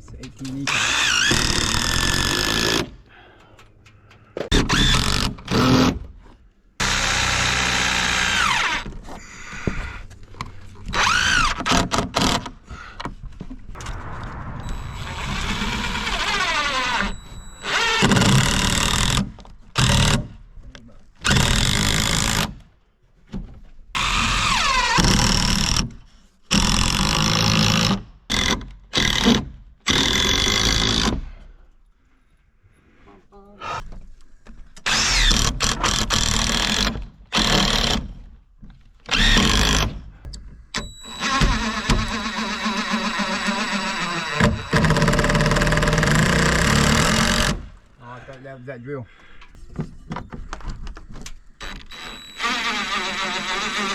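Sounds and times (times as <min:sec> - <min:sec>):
power drill motor whine: 0:00.7 - 0:02.7, 0:06.8 - 0:08.9, 0:14.6 - 0:19.2, 0:40.8 - 0:47.5, 0:51.6 - 0:53.9.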